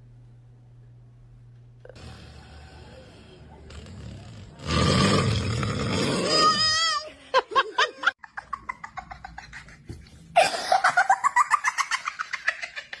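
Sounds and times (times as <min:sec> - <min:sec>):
man snoring: 0:01.8 - 0:06.6.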